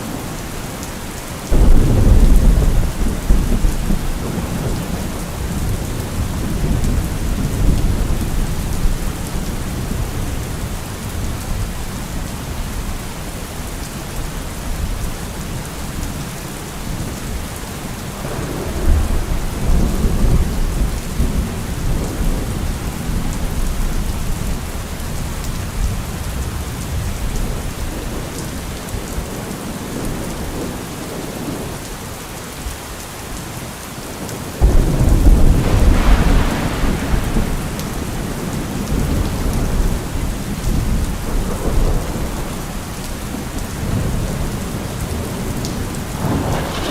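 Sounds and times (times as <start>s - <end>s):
steady rain falling: 0.0s - 46.9s
rolling thunder: 1.5s - 11.8s, 18.1s - 24.5s, 34.6s - 46.9s.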